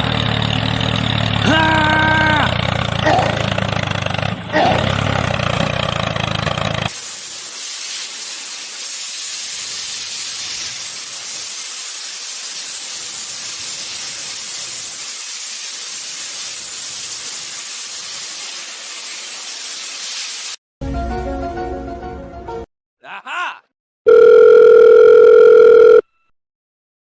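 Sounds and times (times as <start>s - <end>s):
pressurized water spray hissing: 6.9s - 20.6s.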